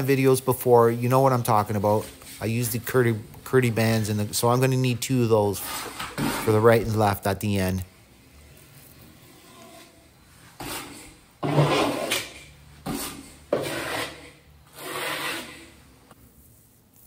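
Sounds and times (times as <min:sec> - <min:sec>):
trowel scraping mortar: 0:05.4 - 0:06.9, 0:09.6 - 0:15.8.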